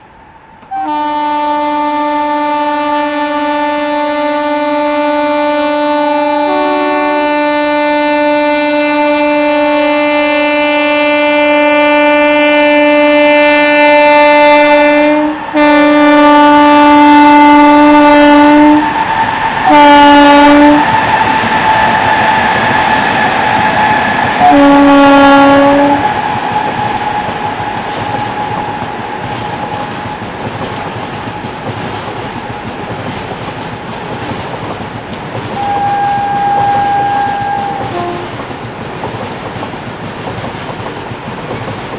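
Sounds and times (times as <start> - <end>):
locomotive blowers howling: 0.6 - 40.0
locomotive horn blasts: 0.7 - 19.0, 19.7 - 21.0, 24.4 - 26.2, 35.5 - 38.5
wagons clattering over rail joints: 26.2 - 41.9.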